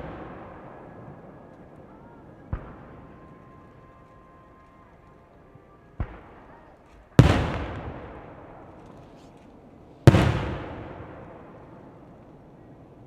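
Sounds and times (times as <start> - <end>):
firework shells bursting: 6.1 - 12.4.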